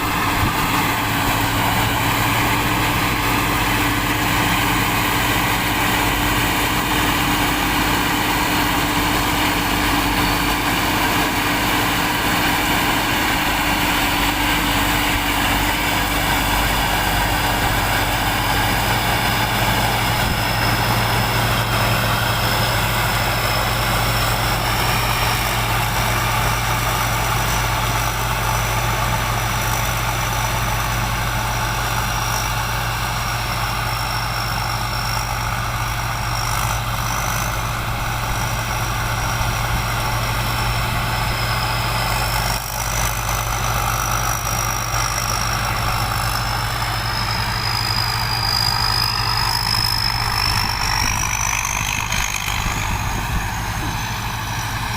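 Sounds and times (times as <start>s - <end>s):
heavy vehicle engine running: 0.0s - 54.9s.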